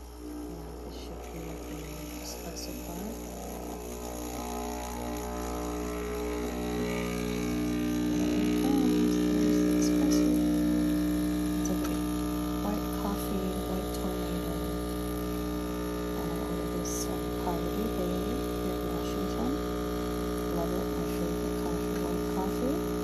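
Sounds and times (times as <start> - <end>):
espresso machine humming: 0.0 - 23.0.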